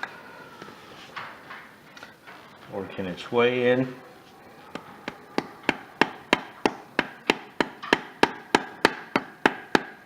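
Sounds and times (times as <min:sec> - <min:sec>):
rubber mallet tapping metal pipe: 0:05.4 - 0:10.0.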